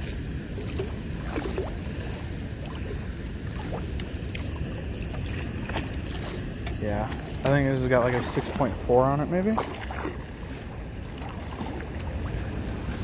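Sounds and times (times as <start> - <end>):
water rushing over spillway: 0.0 - 13.0
wind on microphone: 0.0 - 13.0.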